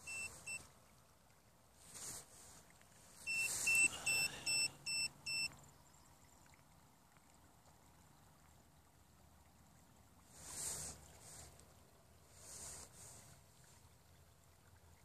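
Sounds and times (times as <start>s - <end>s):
short electronic beeps: 0.0s - 0.6s, 3.3s - 5.5s
brief hiss: 3.2s - 4.6s.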